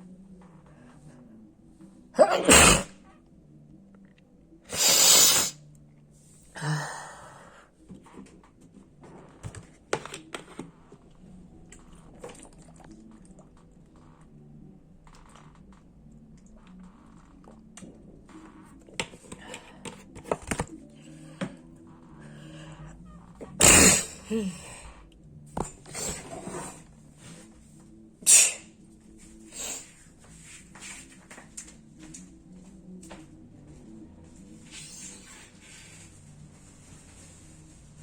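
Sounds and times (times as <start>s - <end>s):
person sneezing: 2.2s - 3.0s, 4.7s - 5.6s, 23.6s - 24.6s, 28.2s - 28.7s.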